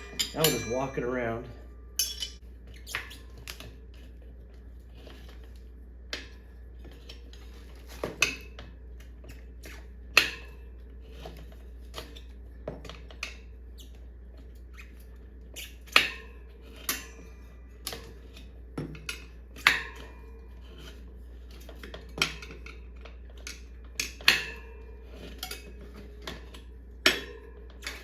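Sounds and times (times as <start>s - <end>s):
tire levers clinking on wheel rim: 0.0s - 4.0s, 11.2s - 28.0s.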